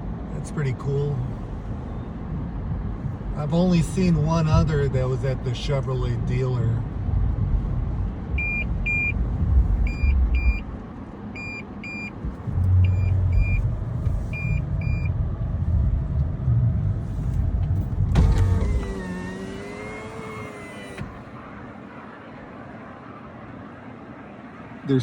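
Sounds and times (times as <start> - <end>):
low vehicle rumble: 0.0 - 24.9
car warning chime beeping: 8.4 - 9.2, 9.8 - 10.7, 11.3 - 13.7, 14.3 - 15.1
power window motor whining: 18.1 - 21.3.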